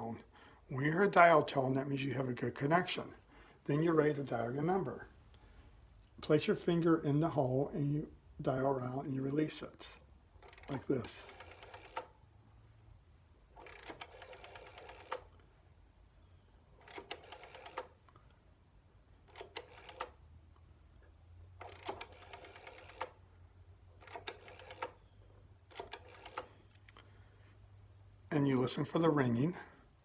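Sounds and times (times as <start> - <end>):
rotary phone dial clicking: 10.4 - 12.2, 13.6 - 15.4, 16.8 - 18.2, 19.3 - 20.2, 21.6 - 23.2, 24.0 - 25.1, 25.7 - 26.9.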